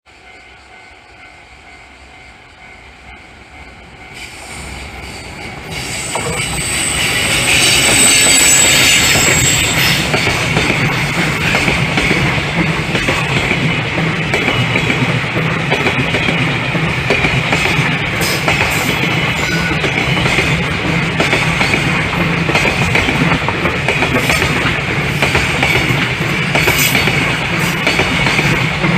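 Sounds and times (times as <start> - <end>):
freight train passing: 0.0 - 28.9
high wheel squeal: 4.2 - 10.4.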